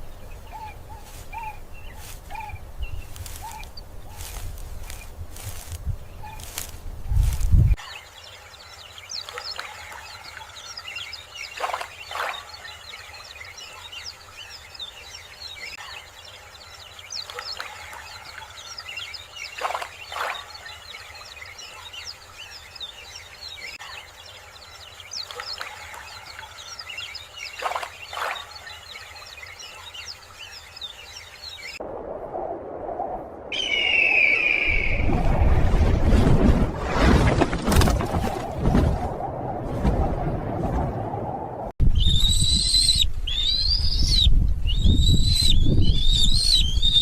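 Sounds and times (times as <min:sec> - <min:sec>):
small birds chirping chorus: 0:00.0 - 0:31.8, 0:41.9 - 0:47.0.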